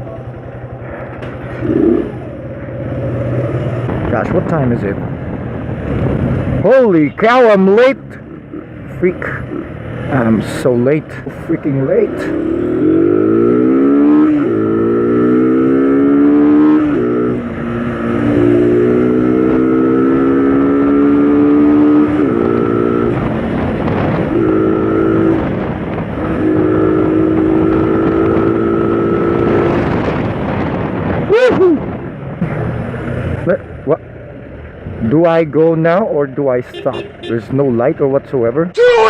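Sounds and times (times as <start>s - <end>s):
motorcycle engine accelerating: 0.0s - 4.6s, 11.8s - 33.8s.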